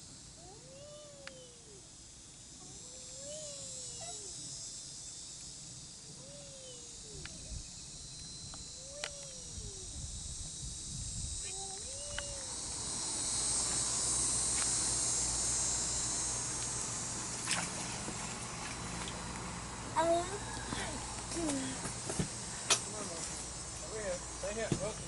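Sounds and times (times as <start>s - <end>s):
insects buzzing and trilling: 0.0s - 25.0s
faint clicks: 8.5s - 9.4s.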